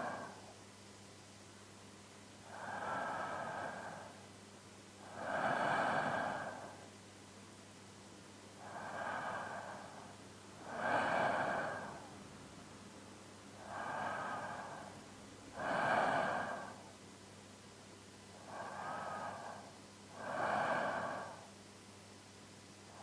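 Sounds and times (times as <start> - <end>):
man's deep sleeping breaths: 0.0 - 0.6, 2.4 - 4.3, 5.0 - 6.9, 8.6 - 12.3, 13.6 - 17.0, 18.3 - 21.6.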